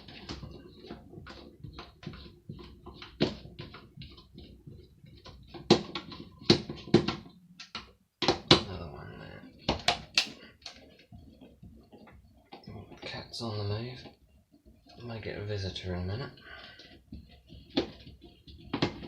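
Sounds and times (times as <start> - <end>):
hard parts clicking and knocking: 9.4 - 13.2.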